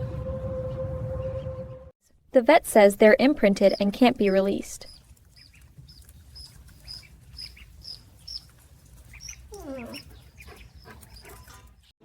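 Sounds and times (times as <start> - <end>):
ducklings peeping: 3.6 - 11.9.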